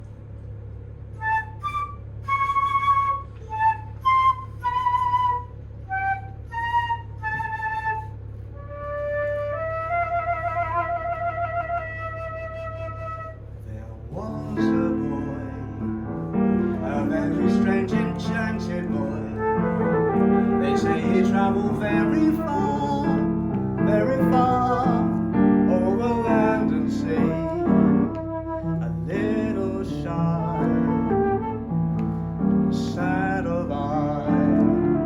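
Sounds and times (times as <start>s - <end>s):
low hum: 0.0s - 35.0s
flute melody: 1.1s - 13.5s, 14.6s - 35.0s
piano chords: 14.0s - 35.0s.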